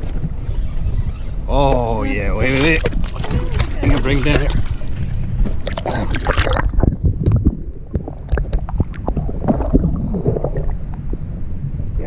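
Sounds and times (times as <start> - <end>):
wind rumbling on microphone: 0.0 - 12.0
water splashing and gurgling: 1.7 - 12.0.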